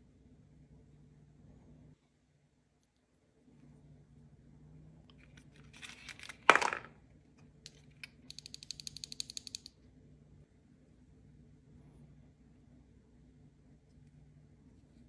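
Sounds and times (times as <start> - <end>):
fast run of clicks: 8.3 - 9.7.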